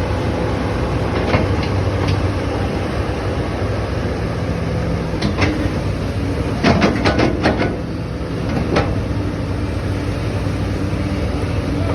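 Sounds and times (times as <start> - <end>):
excavator diesel engine running: 0.0 - 11.9.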